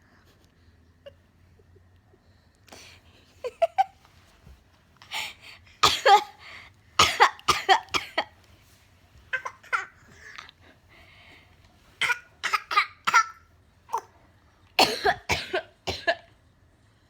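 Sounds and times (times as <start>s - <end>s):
baby coughing: 5.8s - 6.4s, 7.0s - 8.4s, 9.3s - 10.5s, 12.0s - 14.1s, 14.8s - 16.3s
woman coughing: 5.8s - 6.4s, 7.0s - 8.4s, 12.0s - 14.1s, 14.8s - 16.3s.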